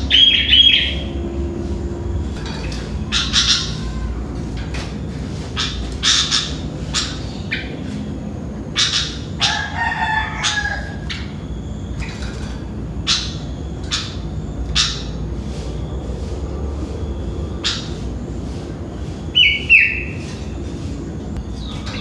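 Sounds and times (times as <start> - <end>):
steady low rumble: 0.0 - 22.0
bulbul calls: 2.5 - 4.2, 8.7 - 15.2.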